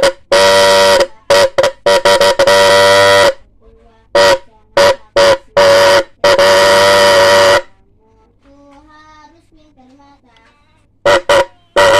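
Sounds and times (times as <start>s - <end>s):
electric horn blasts: 0.0s - 3.5s, 4.1s - 7.8s, 11.0s - 11.9s.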